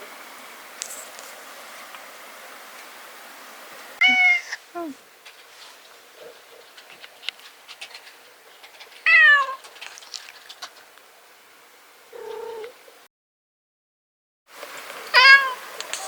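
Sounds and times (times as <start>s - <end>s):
cat yawning cry: 4.0s - 4.6s.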